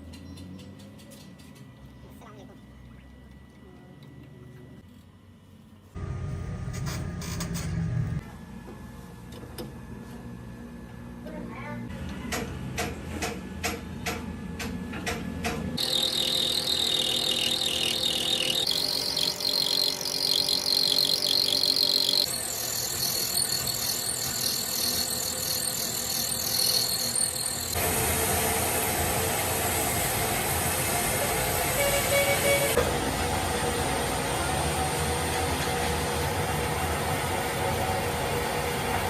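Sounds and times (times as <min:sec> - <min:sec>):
metal lathe clicking: 0:15.8 - 0:27.8
lathe cutting with high whine: 0:15.8 - 0:28.1.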